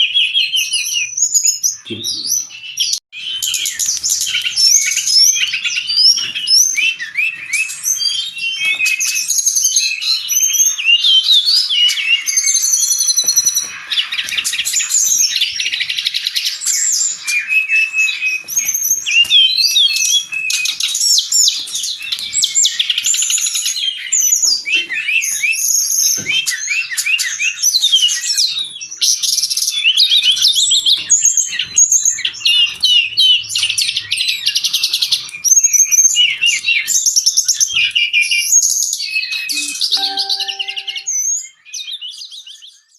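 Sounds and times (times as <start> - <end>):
bird singing chirps and trills: 39.5 - 41.2.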